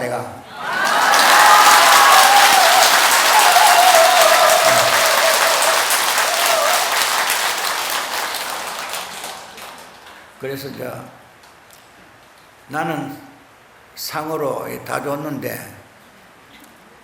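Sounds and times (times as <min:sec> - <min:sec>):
people applauding: 0:00.6 - 0:10.4.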